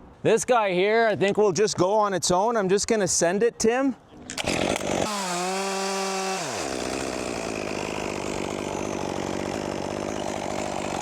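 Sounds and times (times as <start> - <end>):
chainsaw cutting wood: 4.4 - 11.0.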